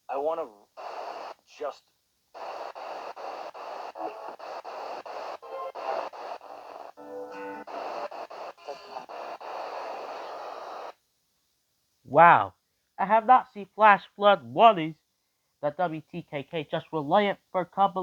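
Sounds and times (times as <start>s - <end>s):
radio hiss: 0.1s - 1.8s, 2.4s - 11.0s
music from radio broadcast: 0.8s - 1.4s, 2.4s - 10.9s.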